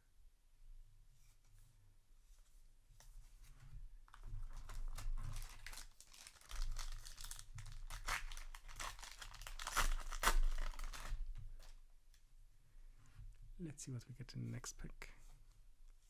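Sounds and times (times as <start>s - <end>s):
wrapper crinkling and tearing: 4.2s - 11.7s.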